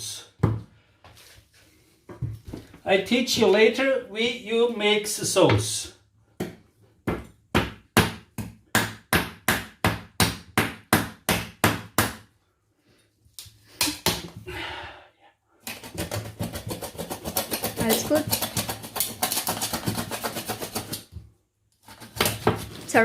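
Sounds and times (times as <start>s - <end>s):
knife chopping on cutting board: 15.7s - 21.0s.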